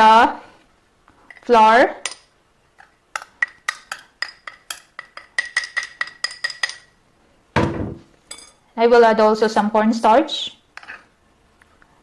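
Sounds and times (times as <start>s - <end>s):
metal utensil clinking against bowl: 3.2s - 6.9s, 8.3s - 8.6s.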